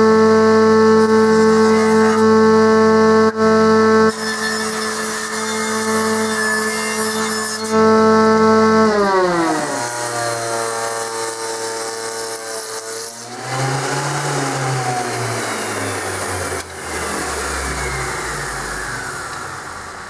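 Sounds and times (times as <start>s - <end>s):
router motor winding down: 0.0s - 20.0s
vacuum rushing hum: 15.1s - 20.0s.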